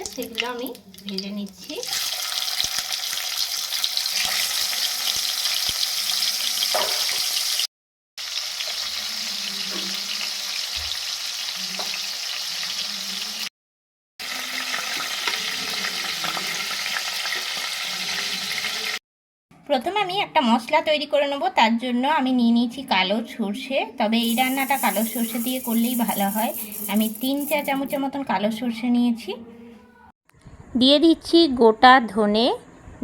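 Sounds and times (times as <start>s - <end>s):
fish frying in hot oil: 0.0s - 13.5s, 14.2s - 19.0s, 24.2s - 27.8s.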